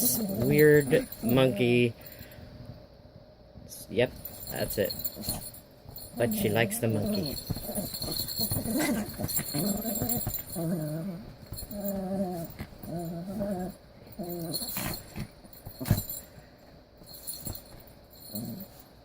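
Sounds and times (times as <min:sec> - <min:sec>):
small dog growling: 0:00.0 - 0:01.8, 0:06.2 - 0:16.0, 0:18.3 - 0:18.8.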